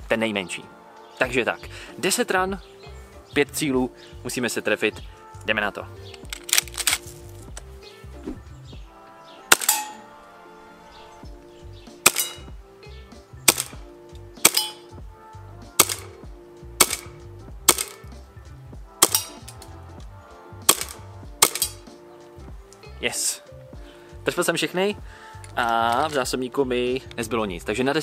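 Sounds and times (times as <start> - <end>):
gas pistol shots: 6.2 - 7.0, 9.5 - 10.0, 12.0 - 12.5, 13.4 - 14.9, 15.8 - 16.2, 16.8 - 18.1, 19.0 - 19.7, 20.6 - 21.9.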